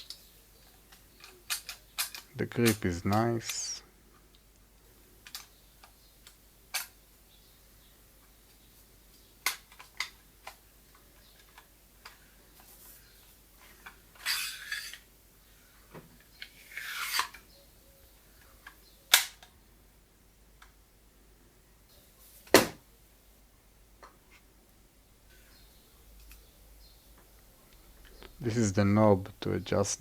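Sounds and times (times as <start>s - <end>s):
nail gun handling clicks and taps: 0.0s - 3.6s, 4.2s - 7.0s, 8.5s - 12.2s, 18.4s - 19.6s.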